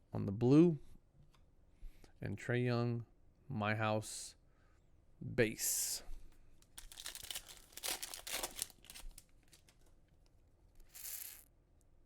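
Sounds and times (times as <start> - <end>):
foil wrapper tearing and crinkling: 6.7 - 9.7.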